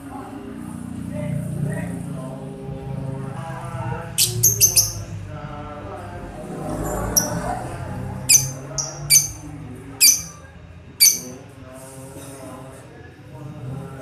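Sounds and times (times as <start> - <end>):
sharp bird chirps: 4.2 - 5.2, 7.2 - 7.4, 8.3 - 10.4, 11.0 - 11.4.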